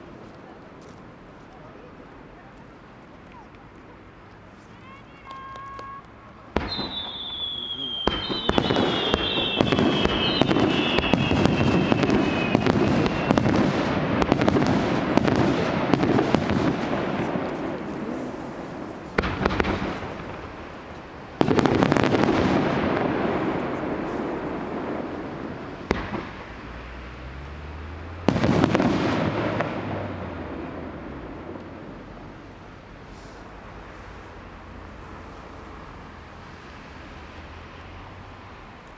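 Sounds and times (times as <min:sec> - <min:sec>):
fireworks crackling and bursting: 0:04.4 - 0:35.9
falling firework whistles: 0:06.6 - 0:16.9.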